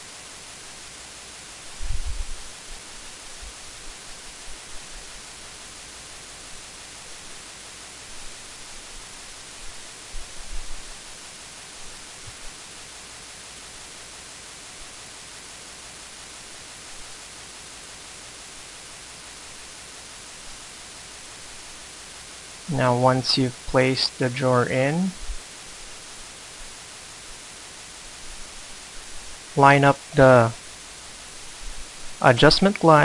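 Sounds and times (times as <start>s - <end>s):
recording hiss: 0.0s - 33.0s
dull low thumps: 1.8s - 2.4s.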